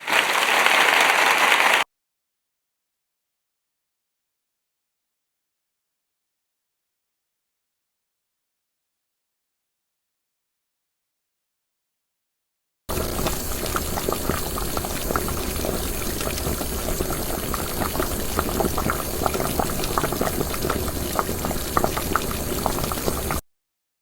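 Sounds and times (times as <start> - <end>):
liquid boiling with small pops: 12.9 - 23.4.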